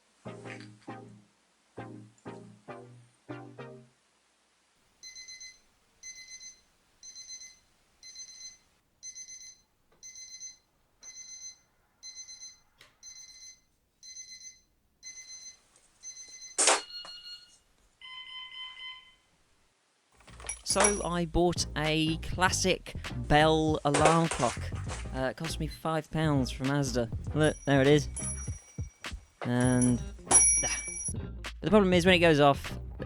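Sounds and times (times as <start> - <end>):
electronic alarm beeping: 5.0 - 19.2.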